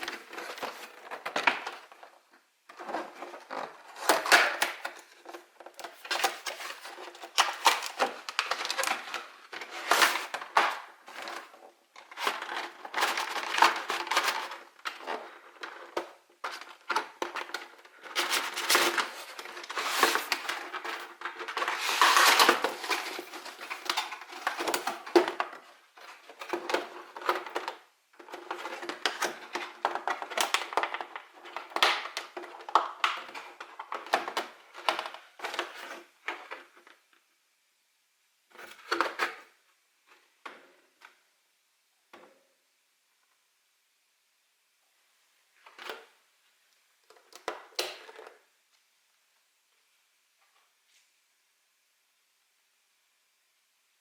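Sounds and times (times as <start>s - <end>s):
packaging crinkling and rustling: 0.0s - 37.1s.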